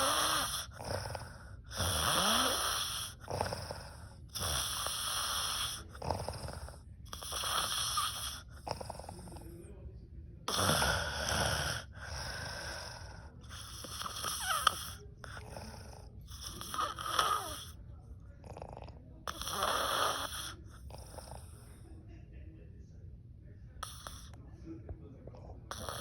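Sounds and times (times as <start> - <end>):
woman snoring loudly: 0.0 - 9.1, 10.5 - 17.8, 19.3 - 20.4.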